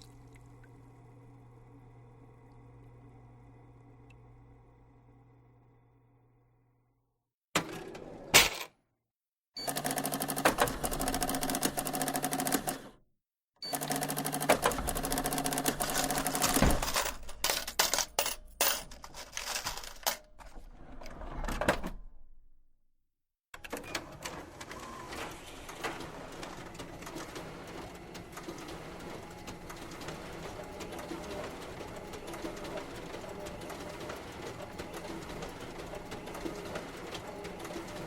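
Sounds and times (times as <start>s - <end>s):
motor hum: 0.0s - 6.6s
office machine clattering: 9.7s - 12.8s, 13.7s - 20.9s, 23.6s - 38.0s.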